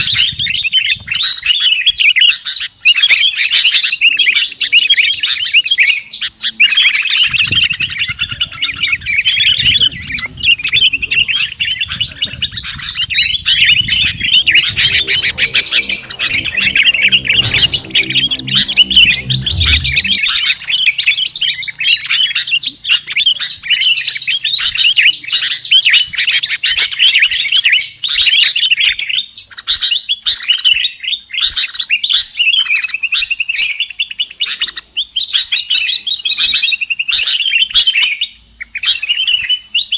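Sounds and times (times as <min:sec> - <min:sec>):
birds chirping and twittering: 0:00.0 - 0:39.9
low rumble: 0:12.8 - 0:21.6.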